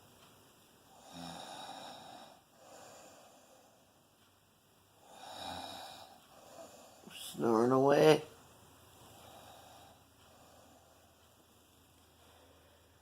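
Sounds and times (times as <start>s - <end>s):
faint rasping snoring: 0.9s - 3.8s, 5.0s - 7.2s.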